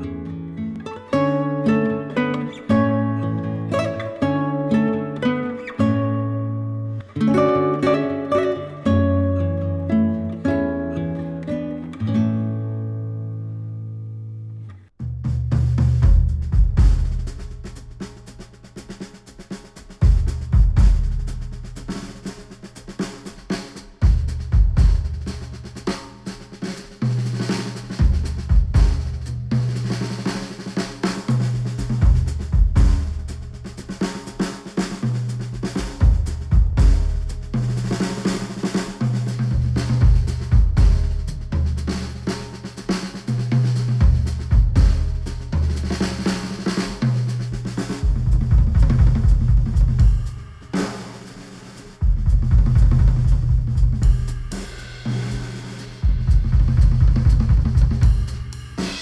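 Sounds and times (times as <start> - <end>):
held bass line: 15.0 - 18.5, 20.0 - 22.2, 24.0 - 25.9, 27.0 - 30.4, 31.1 - 34.2, 35.0 - 42.6, 43.3 - 50.6, 52.0 - 59.0
drum kit: 15.0 - 59.0.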